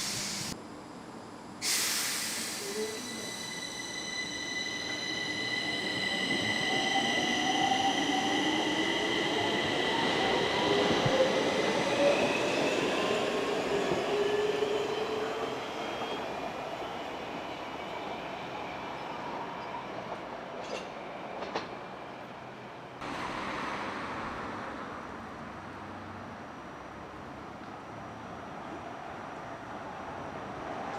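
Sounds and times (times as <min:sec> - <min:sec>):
sudden rush of noise: 0:23.0 - 0:25.4.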